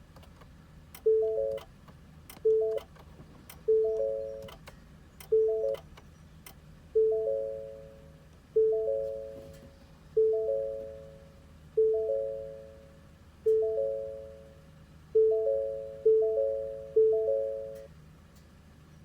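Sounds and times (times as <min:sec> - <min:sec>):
electronic warning chime: 0:05.3 - 0:05.8, 0:10.2 - 0:12.9, 0:13.5 - 0:14.5, 0:15.2 - 0:17.9.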